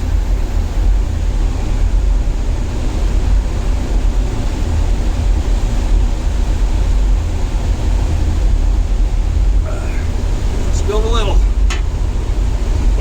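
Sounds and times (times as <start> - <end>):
wind buffeting microphone: 0.0 - 13.0
sea wash: 7.3 - 13.0.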